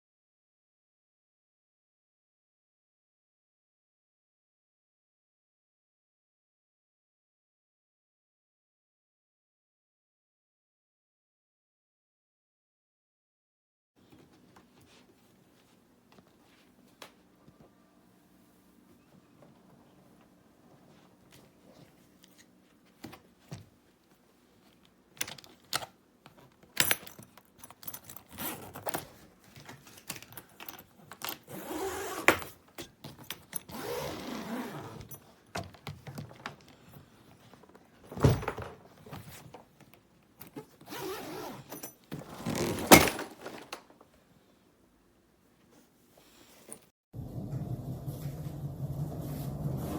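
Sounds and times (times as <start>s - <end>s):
suitcase clicks and rattles: 26.5s - 36.9s, 40.4s - 44.0s
loud suitcase thumps: 42.2s - 43.8s.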